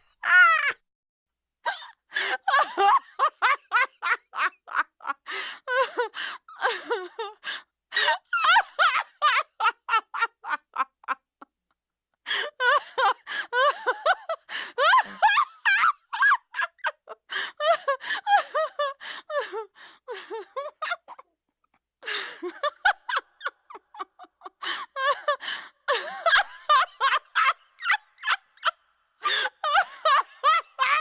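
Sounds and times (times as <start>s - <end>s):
cartoonish giggling laughter: 2.3s - 6.1s, 8.2s - 11.5s, 22.4s - 28.8s, 29.4s - 31.0s.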